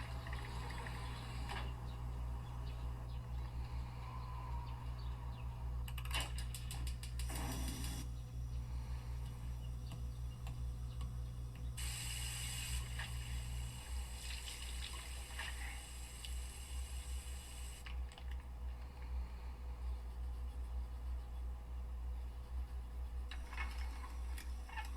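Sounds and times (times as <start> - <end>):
low hum: 0.0 - 24.9.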